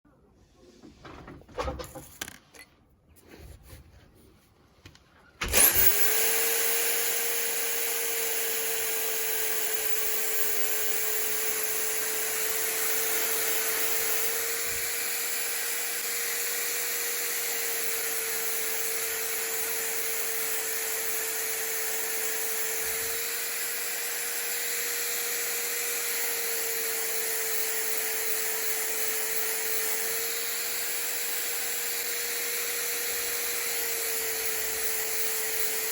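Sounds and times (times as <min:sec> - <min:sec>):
core drill grinding through tile: 0:05.4 - 0:35.9.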